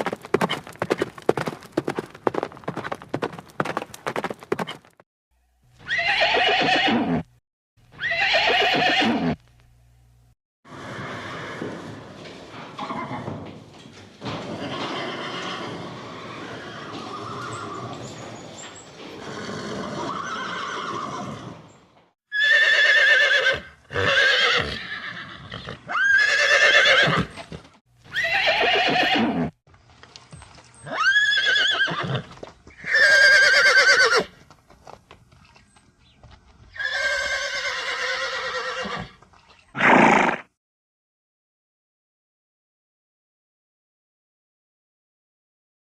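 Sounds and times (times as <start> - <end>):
pony whinnying: 5.8 - 7.3, 8.0 - 9.4, 14.6 - 18.4, 19.0 - 21.7, 22.3 - 29.6, 30.8 - 34.3, 36.7 - 40.5.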